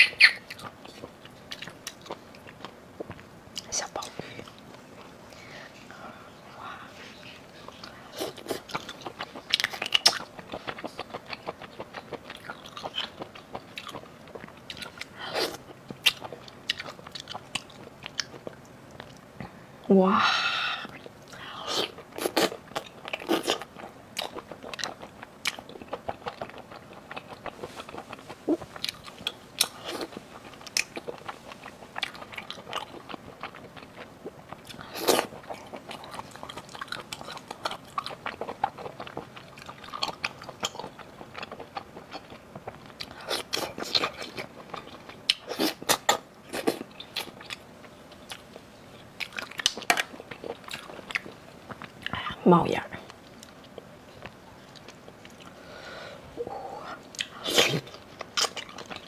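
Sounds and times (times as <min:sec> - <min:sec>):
wet crunchy chewing: 0:21.8 - 0:52.2, 0:57.1 - 0:59.0.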